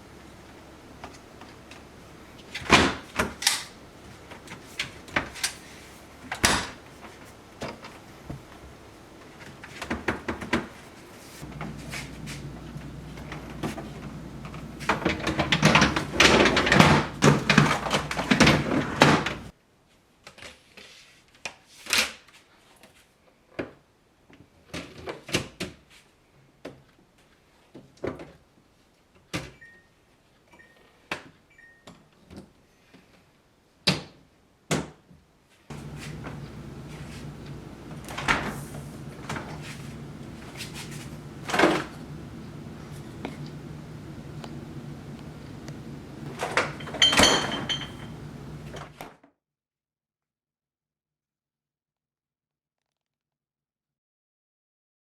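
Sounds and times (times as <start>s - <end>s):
steady hum: 11.4s - 19.5s, 35.7s - 48.8s.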